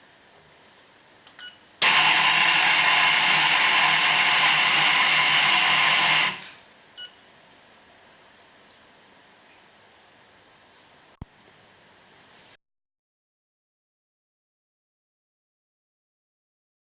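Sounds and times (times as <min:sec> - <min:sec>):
coffee grinder motor whine: 0:01.8 - 0:06.6.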